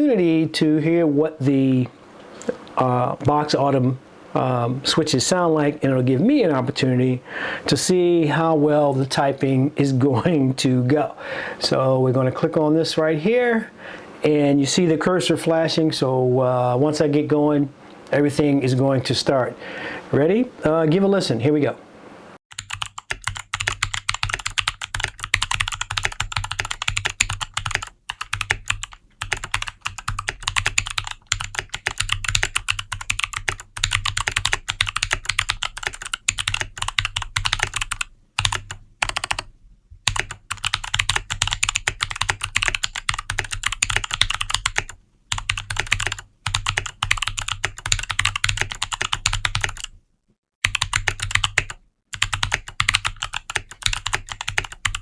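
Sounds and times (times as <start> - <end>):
mechanical keyboard typing: 22.5 - 50.0, 50.6 - 55.0.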